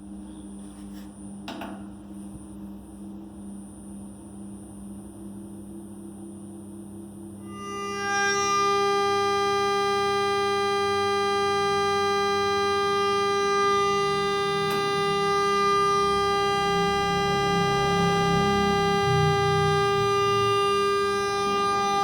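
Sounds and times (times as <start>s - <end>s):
steady electrical whine: 0.0s - 22.0s.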